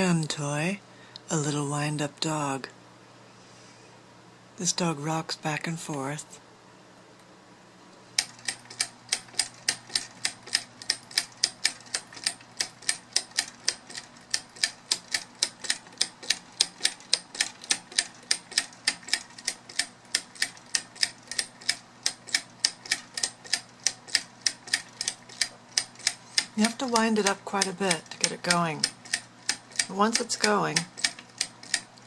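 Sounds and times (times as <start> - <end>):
faint hum: 0.0 - 32.0
clockwork toy clicking: 8.2 - 32.0.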